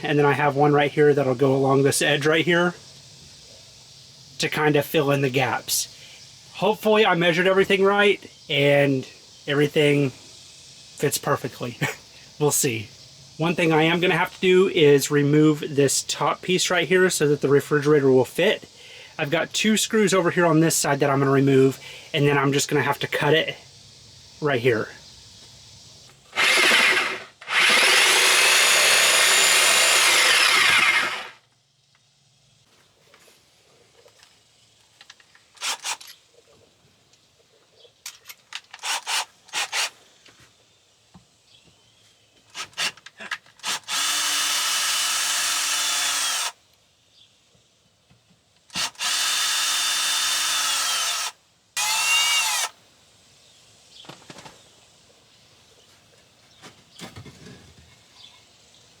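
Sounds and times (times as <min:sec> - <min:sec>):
cordless drill motor whine: 0:26.3 - 0:31.4, 0:43.6 - 0:46.6, 0:48.7 - 0:52.8.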